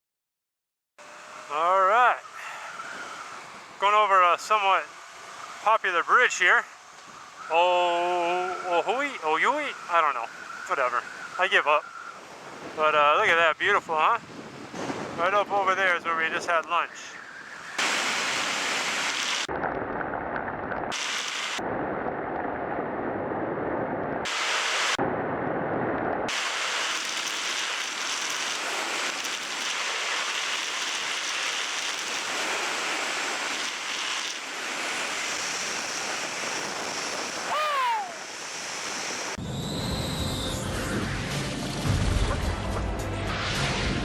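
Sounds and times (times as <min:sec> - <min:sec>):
wind rushing over microphone: 0:12.1 - 0:16.7, 0:17.4 - 0:27.8, 0:32.3 - 0:41.1.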